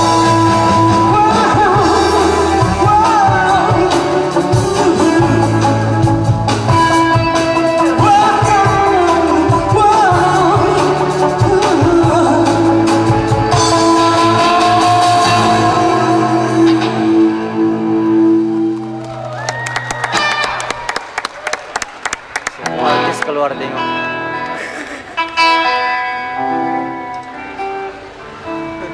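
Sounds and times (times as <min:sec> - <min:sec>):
person singing: 0:00.0 - 0:18.6
rock band playing: 0:00.0 - 0:21.0, 0:22.2 - 0:28.9.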